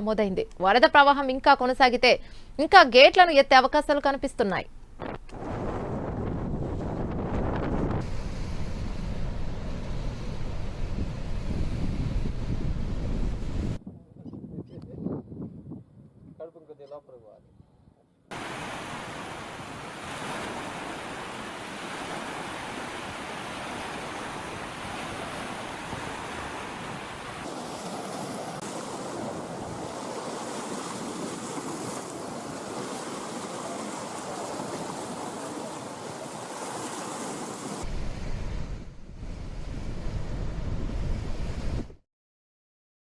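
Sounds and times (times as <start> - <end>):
wind buffeting microphone: 4.8 - 16.4, 37.8 - 42.0
water rushing through dam gates: 18.3 - 37.8.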